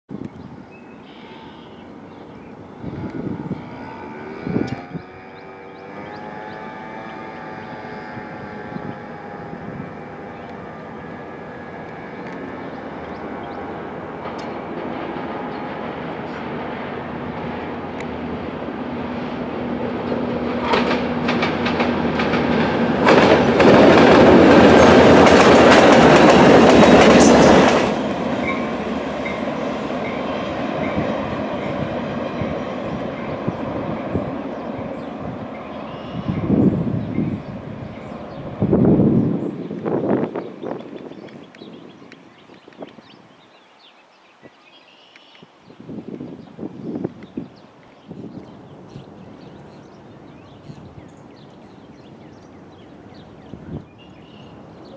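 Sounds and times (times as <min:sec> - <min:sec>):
diesel locomotives passing: 0:00.4 - 0:43.7, 0:46.0 - 0:54.9
train wheel clatter: 0:10.1 - 0:18.2, 0:19.1 - 0:31.8.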